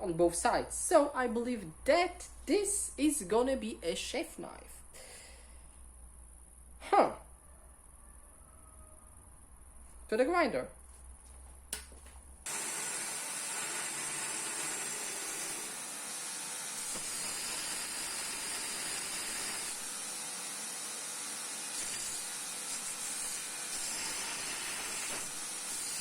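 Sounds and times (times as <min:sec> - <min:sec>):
grinder grinding steel: 0:12.5 - 0:26.0.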